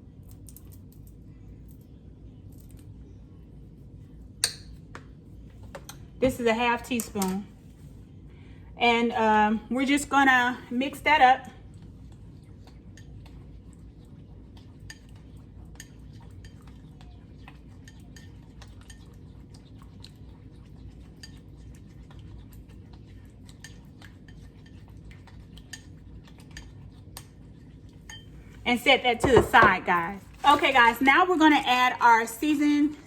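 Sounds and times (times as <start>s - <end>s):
low steady hum: 0.0s - 33.0s
utensil stirring in a bowl: 11.6s - 31.1s.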